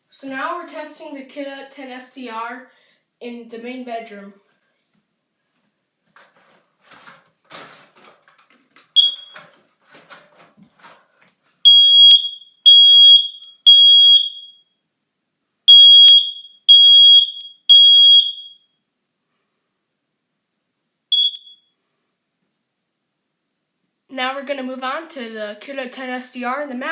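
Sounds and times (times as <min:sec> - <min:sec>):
handling noise: 0:06.0 - 0:11.6
smoke alarm chirp: 0:09.0 - 0:09.4, 0:11.6 - 0:14.8, 0:15.7 - 0:18.8, 0:21.1 - 0:21.8
smoke alarm beeping: 0:09.0 - 0:09.5, 0:11.6 - 0:14.8, 0:15.7 - 0:18.8, 0:21.1 - 0:21.8.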